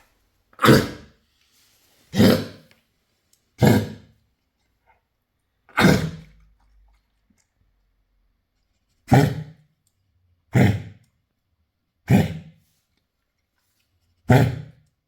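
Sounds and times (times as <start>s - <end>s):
dog coughing: 0.6s - 1.2s, 2.1s - 2.7s, 3.6s - 4.1s, 5.7s - 6.3s, 9.1s - 9.6s, 10.5s - 11.0s, 12.1s - 12.5s, 14.3s - 14.8s.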